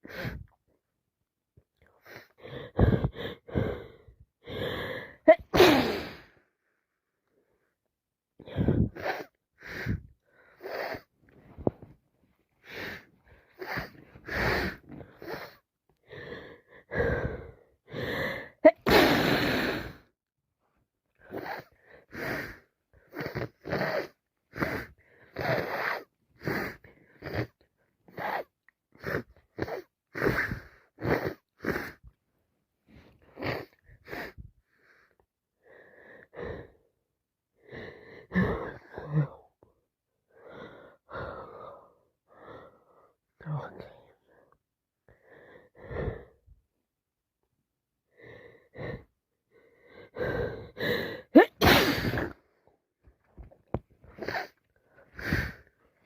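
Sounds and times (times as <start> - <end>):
woman breathing through congested nose: 1.9 - 6.4, 8.4 - 11.9, 12.6 - 20.1, 48.1 - 51.3, 54.1 - 55.8.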